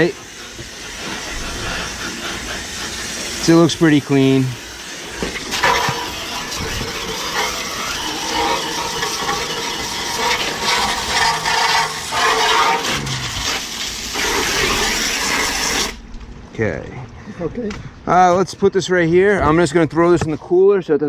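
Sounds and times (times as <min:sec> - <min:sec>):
hose spraying water on metal coil: 0:00.0 - 0:16.0.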